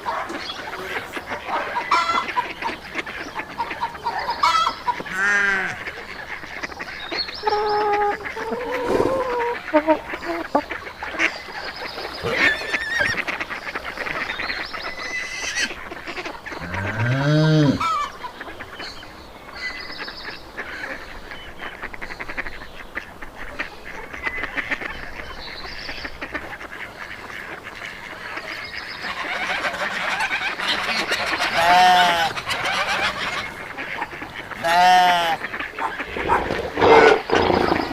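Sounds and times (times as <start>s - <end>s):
goose-like honking: 0.1s - 11.4s, 26.0s - 37.9s
busy background noise: 20.4s - 37.9s.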